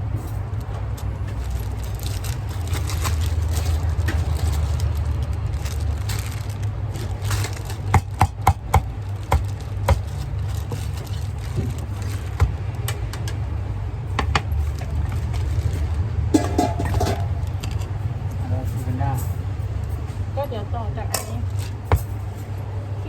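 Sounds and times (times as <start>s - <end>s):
low traffic rumble: 0.0s - 23.0s
kitchen utensils knocking and clinking: 16.3s - 17.8s.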